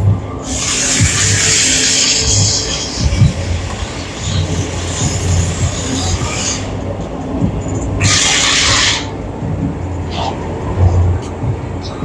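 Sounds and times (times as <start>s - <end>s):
music over loudspeakers: 0.0s - 12.0s
vehicle and street noise: 0.0s - 12.0s
loud hiss: 0.4s - 6.7s, 8.0s - 9.1s.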